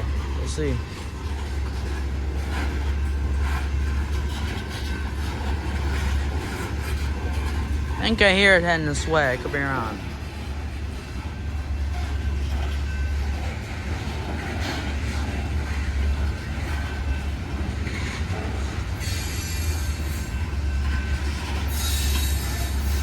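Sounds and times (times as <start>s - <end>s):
freight train rumbling: 0.0s - 23.0s
train wheels squealing: 11.8s - 23.0s.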